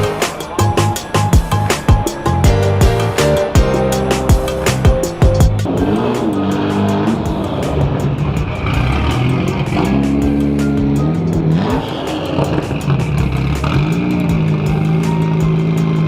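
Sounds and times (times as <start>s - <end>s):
car engines revving: 0.0s - 16.0s
music with fast beat: 0.0s - 16.0s.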